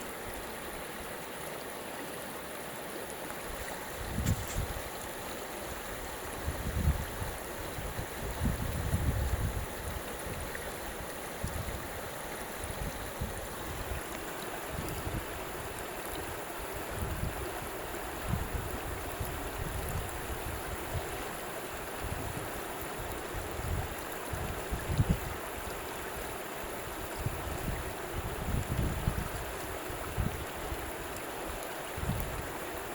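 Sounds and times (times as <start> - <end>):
water rushing: 0.0 - 32.9
wind buffeting microphone: 3.5 - 21.2, 21.8 - 25.4, 27.1 - 30.9, 32.0 - 32.6.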